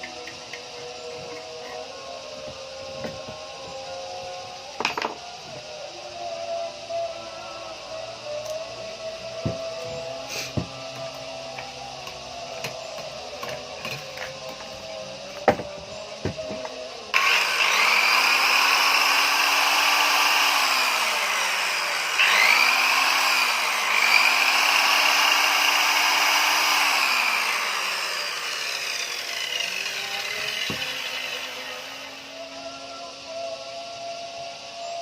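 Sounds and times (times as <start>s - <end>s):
power tool motor whining: 7.8s - 32.7s.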